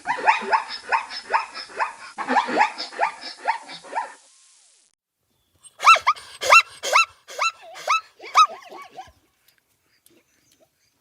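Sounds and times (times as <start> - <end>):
animal yelping barks: 0.0 - 4.2, 5.7 - 9.2
arched animal calls: 5.7 - 9.2.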